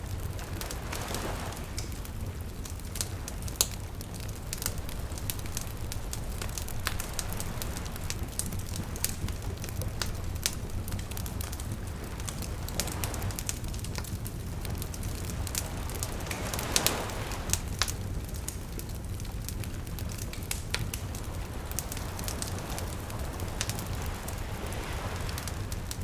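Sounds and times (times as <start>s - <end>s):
water lapping: 0.0s - 26.0s
wood fire crackling and popping: 0.0s - 26.0s.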